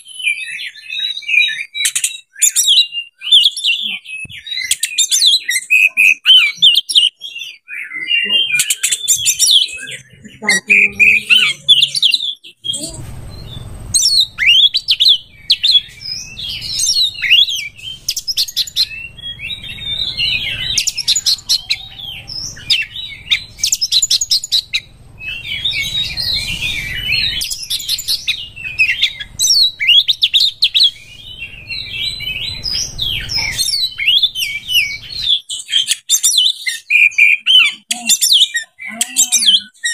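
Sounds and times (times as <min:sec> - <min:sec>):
bird singing whistles and trills: 0:00.0 - 0:39.9
low background rumble: 0:10.0 - 0:35.3.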